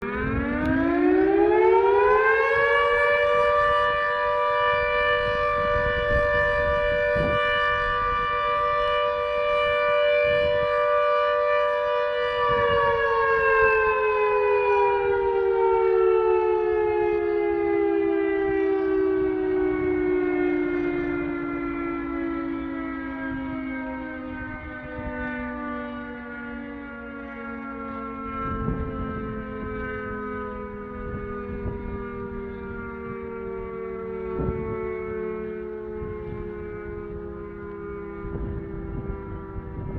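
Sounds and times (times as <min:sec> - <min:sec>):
air raid siren wailing: 0:00.0 - 0:39.9.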